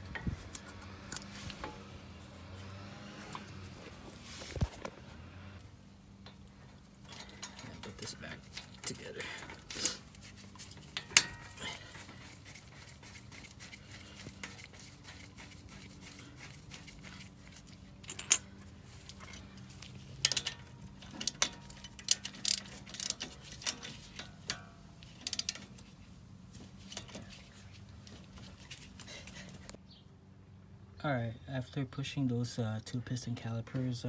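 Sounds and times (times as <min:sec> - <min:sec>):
metal tools clinking: 0:07.0 - 0:15.2, 0:16.0 - 0:26.0, 0:26.7 - 0:29.7.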